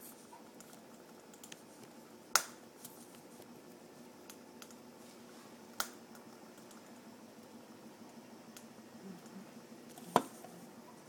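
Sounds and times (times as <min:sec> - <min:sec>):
small clicks and ticks: 0:00.3 - 0:02.5.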